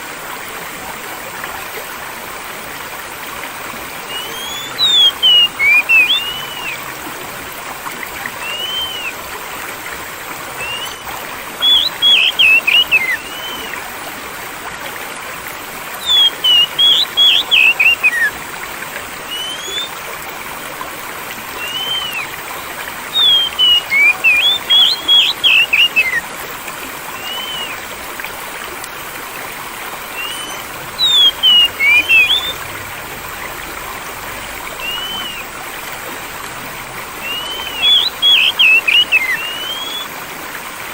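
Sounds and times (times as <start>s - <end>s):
flowing stream water: 0.0s - 40.9s
songbird singing: 4.0s - 7.0s, 8.2s - 9.3s, 10.4s - 13.8s, 15.9s - 20.1s, 21.4s - 35.5s, 37.0s - 40.1s.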